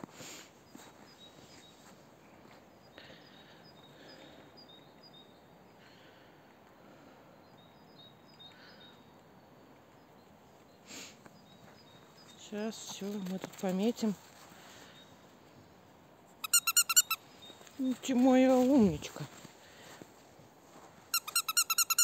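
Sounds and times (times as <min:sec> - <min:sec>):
distant birds chirping: 0:00.3 - 0:19.8
soft rustles: 0:11.2 - 0:15.6, 0:17.4 - 0:21.4.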